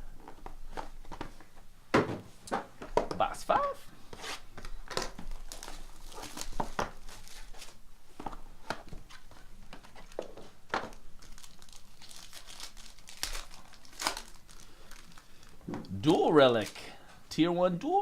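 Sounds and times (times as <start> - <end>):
wrapping tearing and crinkling: 4.6 - 7.8, 9.1 - 15.6, 16.3 - 16.9.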